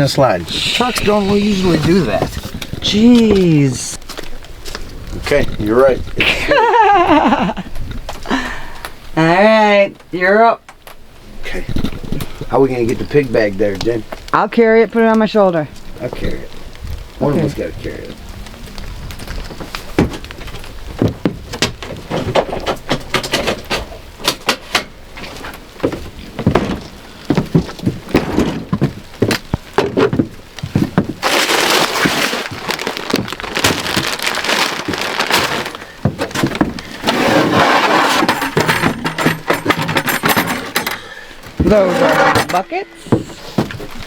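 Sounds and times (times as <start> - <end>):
footsteps crunching on ice: 28.8 - 37.0.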